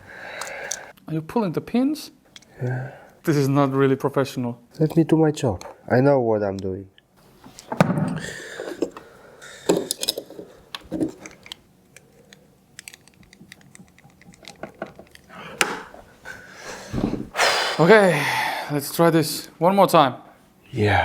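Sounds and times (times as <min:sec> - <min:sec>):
small hard parts clicking: 0:00.3 - 0:00.9, 0:08.6 - 0:16.0.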